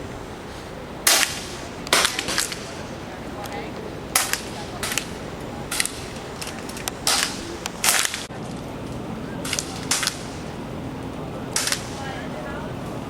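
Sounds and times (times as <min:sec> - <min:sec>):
air rifle shots: 0:01.0 - 0:08.3, 0:09.4 - 0:10.5, 0:11.5 - 0:12.2.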